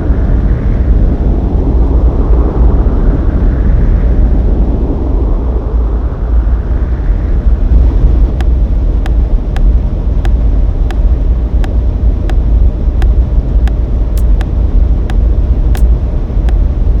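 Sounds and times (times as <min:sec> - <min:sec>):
loud low rumble: 0:06.2 - 0:17.0
sharp clicks: 0:13.0 - 0:14.6.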